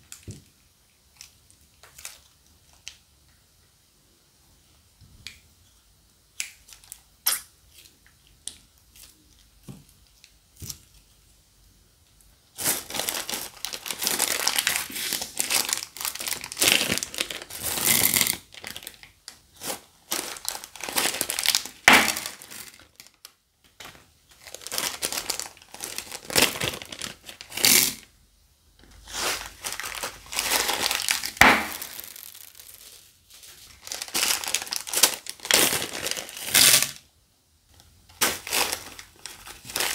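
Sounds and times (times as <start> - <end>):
plastic bags crinkling: 12.5 - 28.1, 28.9 - 37.0, 37.8 - 39.9.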